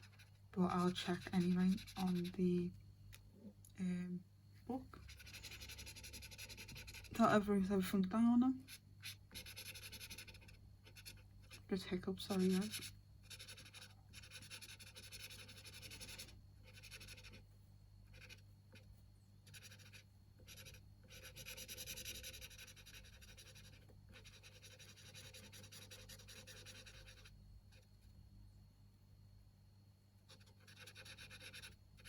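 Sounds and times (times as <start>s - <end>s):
gel pen scratching on paper: 0.0s - 2.4s, 5.0s - 7.9s, 8.6s - 17.4s, 18.1s - 27.3s, 30.3s - 32.0s.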